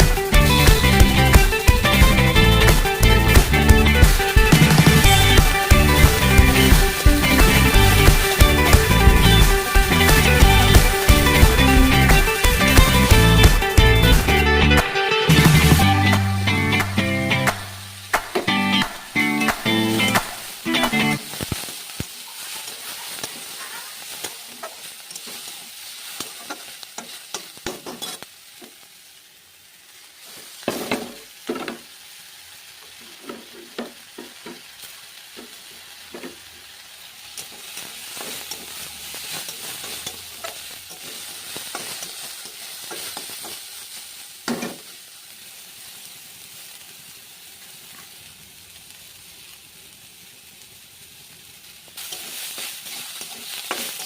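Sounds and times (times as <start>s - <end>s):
food sizzling in a pan: 0.0s - 54.0s
spatula scraping a pan: 22.4s - 28.8s, 33.0s - 34.6s, 37.4s - 43.6s, 52.0s - 54.0s.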